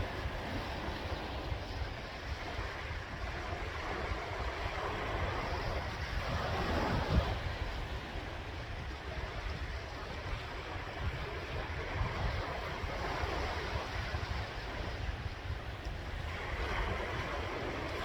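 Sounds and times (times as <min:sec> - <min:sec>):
sea waves washing on shore: 0:00.0 - 0:18.0.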